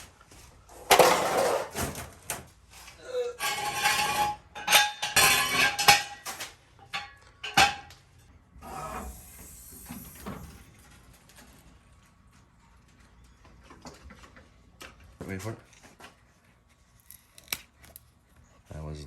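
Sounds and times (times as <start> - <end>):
metal objects clattering: 3.4 - 7.9.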